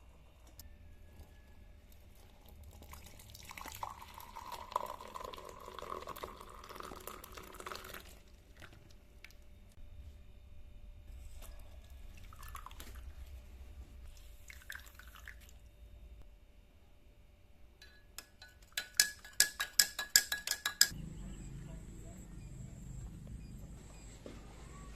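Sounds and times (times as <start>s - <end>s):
spoon clinking against glass: 17.8s - 21.0s.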